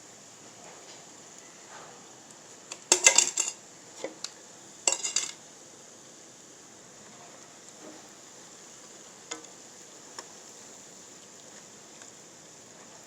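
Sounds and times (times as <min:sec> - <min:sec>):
utensils clinking on dishware: 0:02.8 - 0:03.6, 0:04.9 - 0:05.4.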